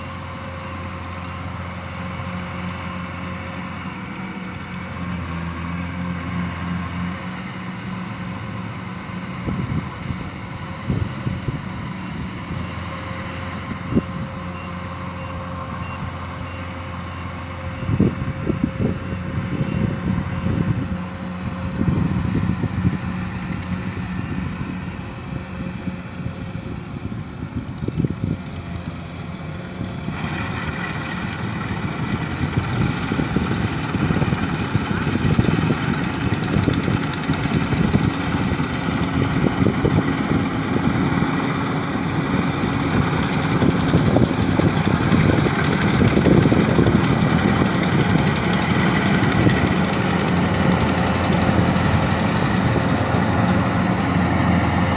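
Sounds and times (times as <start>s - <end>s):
engine running: 0.0s - 54.9s
broad mechanical noise: 29.2s - 54.9s.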